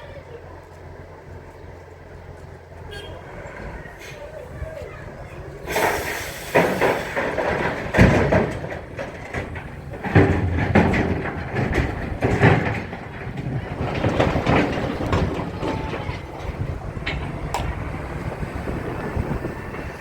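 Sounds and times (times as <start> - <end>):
debris crashing and clattering: 5.7 - 18.4
low rumble: 6.8 - 20.0.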